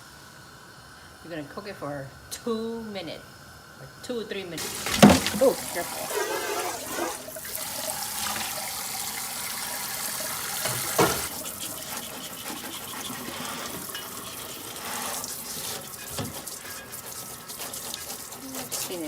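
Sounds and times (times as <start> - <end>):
tap water running into sink: 4.6 - 19.0.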